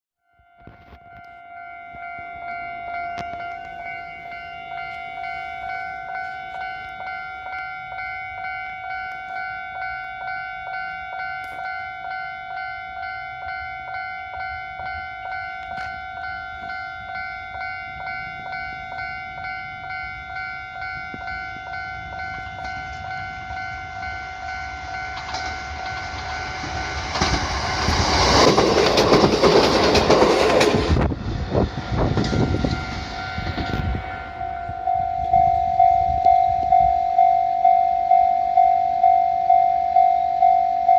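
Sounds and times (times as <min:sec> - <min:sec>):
level crossing warning bell: 0:00.2 - 0:40.9
train wheels clattering over rails: 0:22.3 - 0:34.1.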